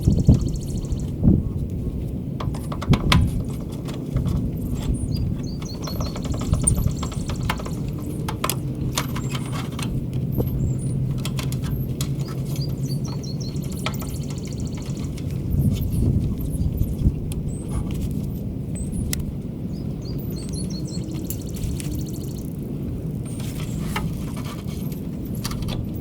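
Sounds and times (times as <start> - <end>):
birds chirping: 0.0 - 1.4, 2.5 - 26.0
hand tools clicking and knocking: 2.4 - 15.9, 23.3 - 26.0.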